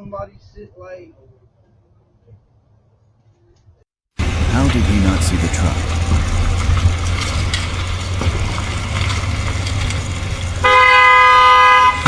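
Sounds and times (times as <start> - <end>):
vehicle horn blast: 10.6 - 12.0.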